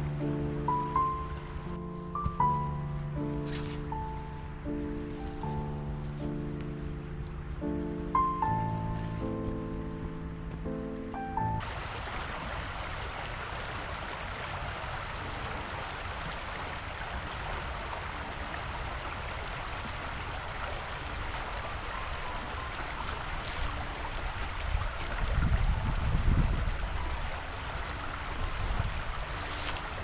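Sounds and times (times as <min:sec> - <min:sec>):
creek rushing: 0:00.0 - 0:30.0
wind buffeting microphone: 0:21.9 - 0:30.0.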